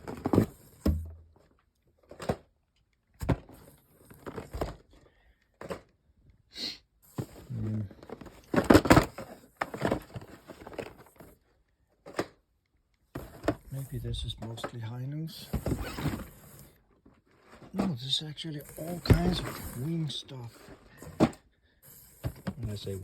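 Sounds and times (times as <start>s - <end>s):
cardboard boxes knocking and thudding: 0.0s - 1.4s, 18.8s - 19.8s.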